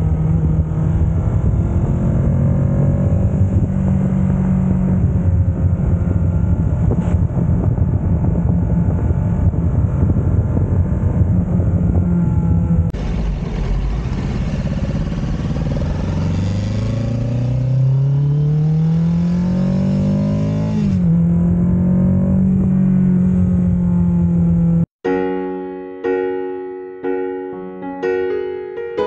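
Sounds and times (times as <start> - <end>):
motorcycle engine accelerating: 0.0 - 24.9
piano music: 25.0 - 29.0.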